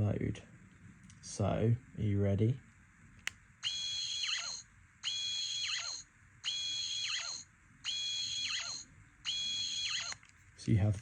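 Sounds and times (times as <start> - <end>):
toy electronic tone with falling swoop: 3.6 - 10.2.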